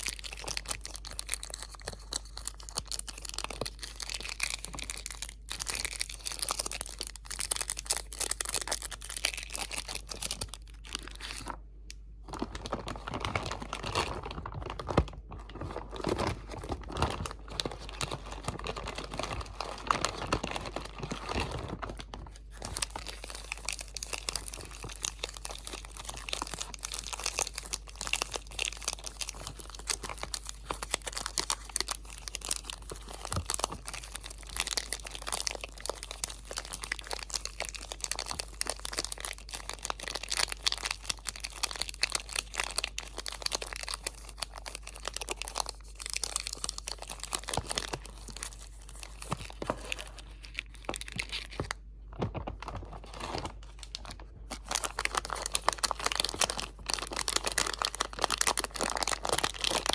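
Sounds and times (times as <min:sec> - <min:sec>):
crinkly material crumpling: 0:00.0 - 0:59.9.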